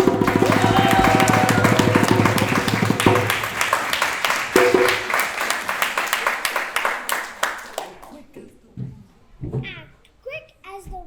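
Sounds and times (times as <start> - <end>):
audience applauding: 0.0 - 8.2.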